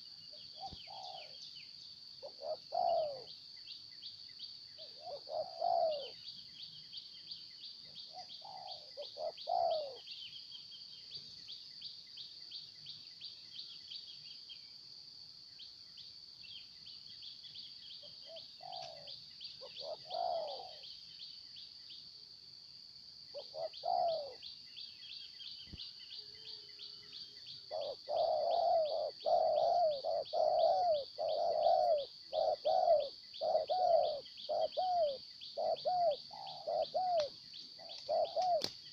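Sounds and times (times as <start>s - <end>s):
doves cooing: 0.0s - 1.4s, 2.2s - 3.3s, 4.8s - 6.2s, 8.1s - 10.0s, 18.2s - 20.8s, 23.3s - 24.4s, 27.6s - 38.8s.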